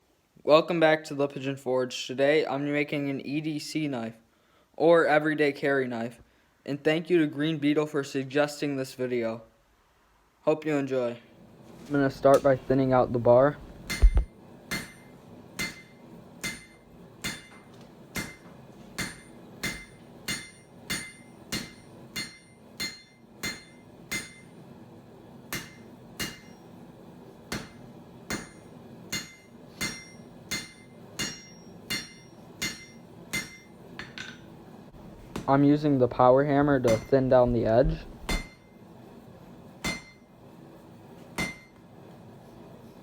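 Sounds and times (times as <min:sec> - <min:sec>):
hammer striking steel on anvil: 0:13.8 - 0:24.6, 0:25.5 - 0:26.8, 0:27.5 - 0:34.5, 0:36.8 - 0:37.3, 0:38.0 - 0:38.7, 0:39.8 - 0:40.2, 0:41.4 - 0:41.8.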